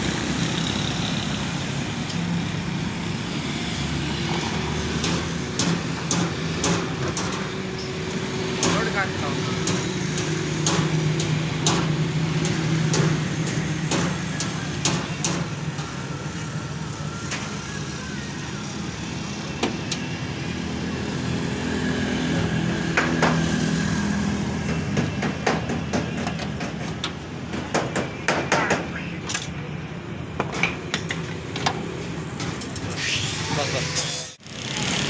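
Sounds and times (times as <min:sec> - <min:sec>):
sharp clicks and knocks: 0:05.0 - 0:07.6, 0:08.6 - 0:09.0, 0:09.6 - 0:16.0, 0:24.6 - 0:29.6, 0:30.4 - 0:33.0.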